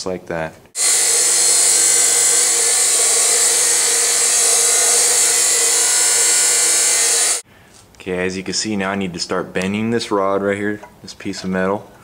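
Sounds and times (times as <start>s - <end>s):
electric welder crackling hiss: 0.8s - 7.4s.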